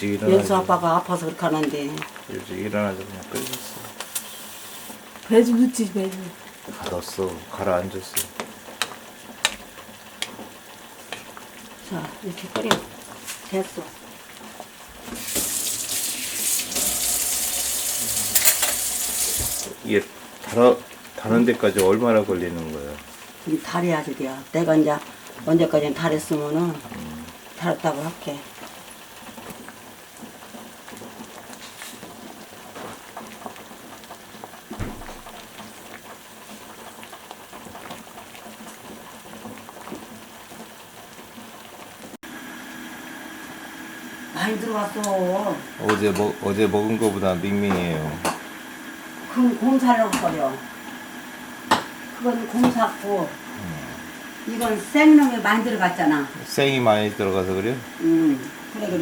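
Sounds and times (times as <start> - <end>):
tea boiling and bubbling: 0.0 - 59.0
tap water running into sink: 14.9 - 20.0.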